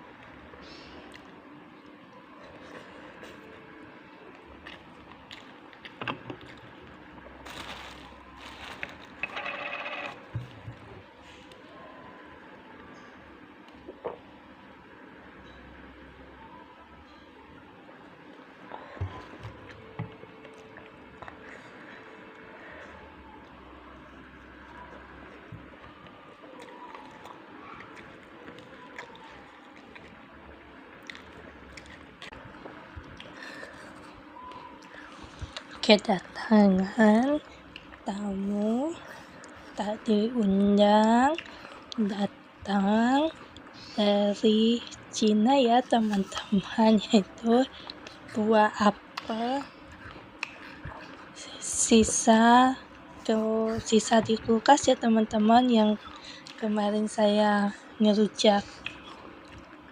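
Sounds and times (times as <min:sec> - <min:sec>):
low background hum: 0:00.0 - 0:59.9
wet chewing: 0:04.3 - 0:07.4, 0:23.4 - 0:35.8, 0:40.6 - 0:42.6, 0:47.7 - 0:51.4, 0:58.6 - 0:59.9.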